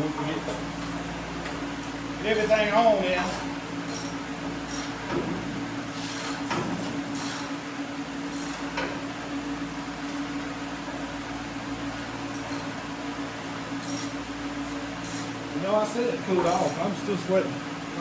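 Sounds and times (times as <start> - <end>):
electric hum of equipment: 0.0 - 18.0.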